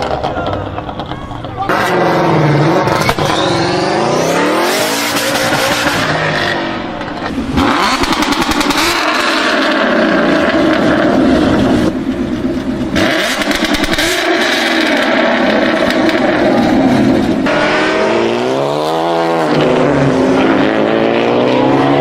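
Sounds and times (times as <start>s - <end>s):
exhaust popping and crackling: 0.0s - 20.6s
car engines revving hard: 0.0s - 22.0s.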